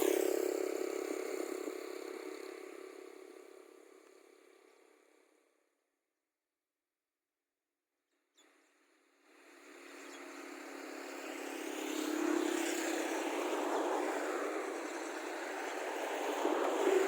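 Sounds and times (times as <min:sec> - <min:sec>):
vehicle engine passing close: 0:10.0 - 0:17.0.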